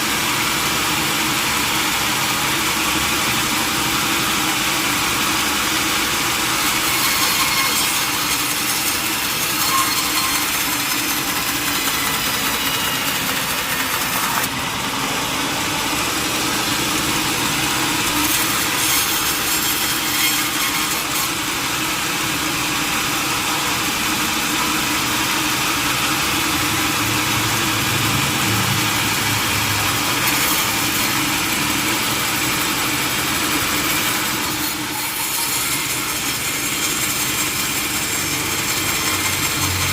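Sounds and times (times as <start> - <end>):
saw noise: 0.0 - 39.9
machinery engine drone: 25.9 - 30.3.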